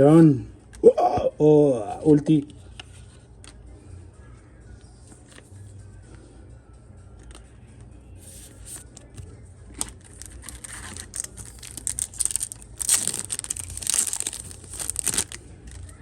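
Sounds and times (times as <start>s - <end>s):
foil pack crinkling and tearing: 9.7s - 16.0s.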